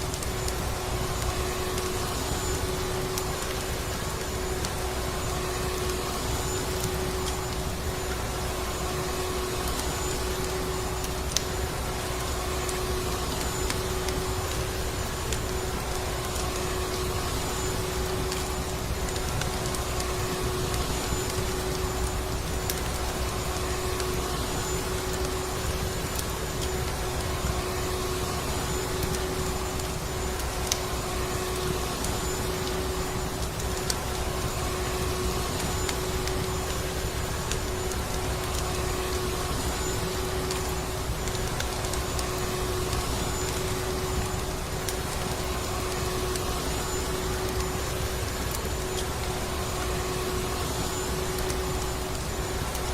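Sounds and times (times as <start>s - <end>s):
wood fire crackling: 0.0s - 52.9s
vacuum cleaner running: 11.5s - 52.9s.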